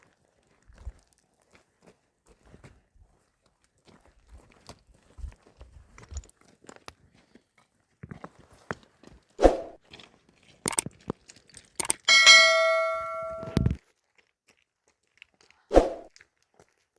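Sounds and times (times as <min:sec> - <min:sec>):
metal object clanging: 0:11.9 - 0:13.7.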